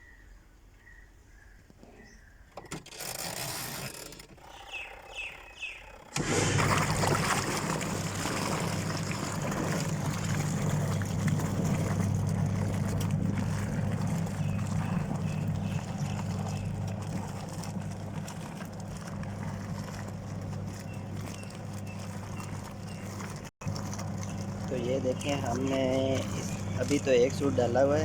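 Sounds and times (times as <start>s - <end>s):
washing machine motor hum: 3.0s - 28.0s
water and clothes churning: 6.1s - 28.0s.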